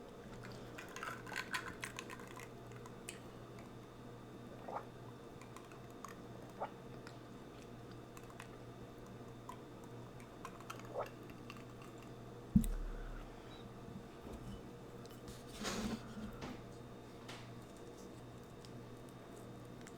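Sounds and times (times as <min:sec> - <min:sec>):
low thump: 0:12.6 - 0:13.2.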